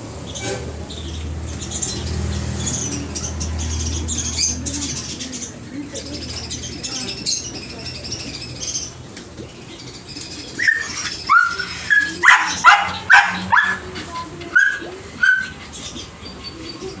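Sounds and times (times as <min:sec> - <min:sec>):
caged birds chirping: 0:00.0 - 0:17.0
puppy yapping: 0:10.6 - 0:15.7.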